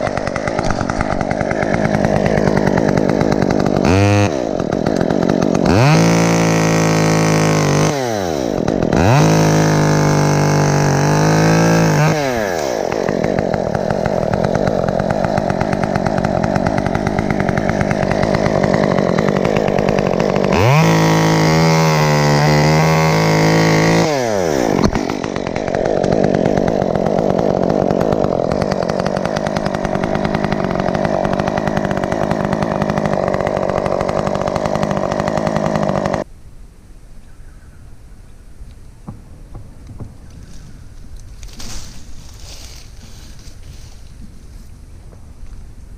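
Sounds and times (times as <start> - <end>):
chainsaw engine revving: 0.0 - 36.3.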